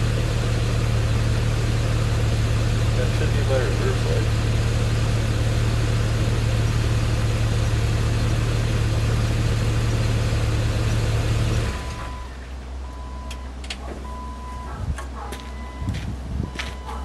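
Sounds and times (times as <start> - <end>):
car engine idling: 0.0 - 17.0
short steady beep: 15.5 - 17.0.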